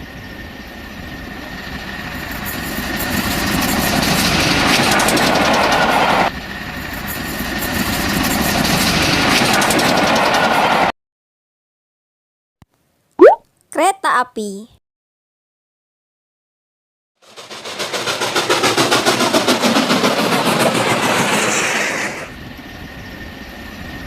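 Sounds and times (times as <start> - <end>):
high-speed train rushing: 0.0 - 10.9, 17.2 - 24.0.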